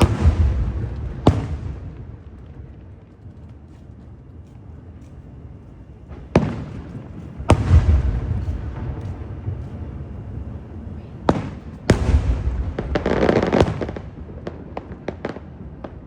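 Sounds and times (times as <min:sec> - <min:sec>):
fireworks bangs: 0:00.0 - 0:03.2, 0:06.1 - 0:16.0
low boom: 0:07.4 - 0:10.0.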